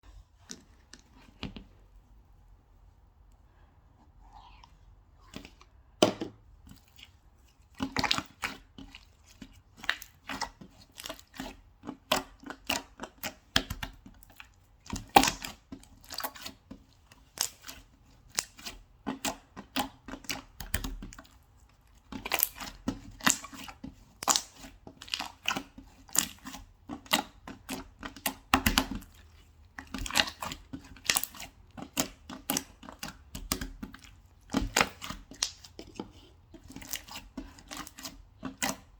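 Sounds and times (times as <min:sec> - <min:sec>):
slime squished by hand: 0:22.0 - 0:38.9.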